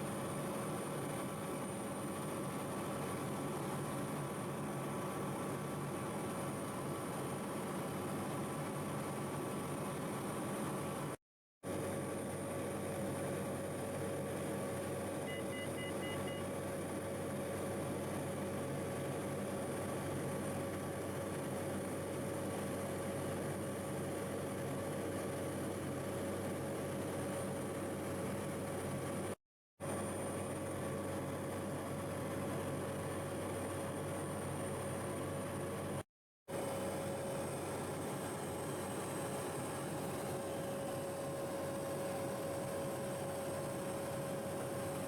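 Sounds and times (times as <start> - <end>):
short faint beeps: 15.3 - 16.4.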